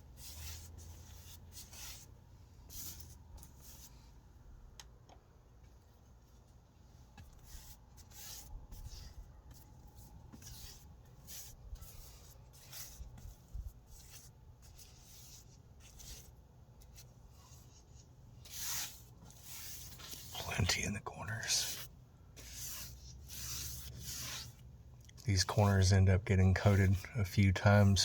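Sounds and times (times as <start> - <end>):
paintbrush scratchy swishes: 0.1 - 2.1, 7.4 - 24.7, 25.4 - 28.0.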